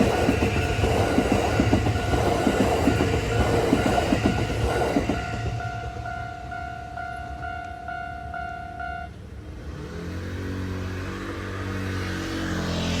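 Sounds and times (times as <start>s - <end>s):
level crossing warning bell: 0.0s - 9.4s
vehicle engine pulling away: 9.5s - 13.0s.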